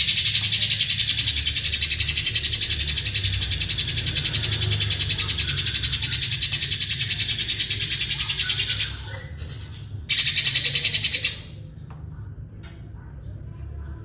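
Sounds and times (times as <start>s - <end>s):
lovebird rattling trill: 0.0s - 9.0s, 10.1s - 11.6s.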